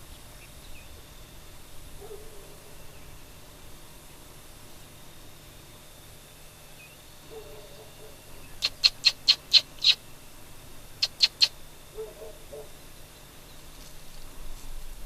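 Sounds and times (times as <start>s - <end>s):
high-pitched predator call squeaks: 8.6s - 10.0s, 11.0s - 11.6s.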